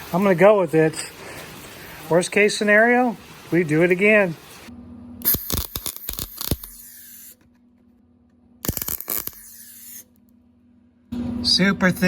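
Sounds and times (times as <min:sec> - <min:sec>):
welder arc crackling: 0:00.0 - 0:07.5, 0:08.6 - 0:10.2.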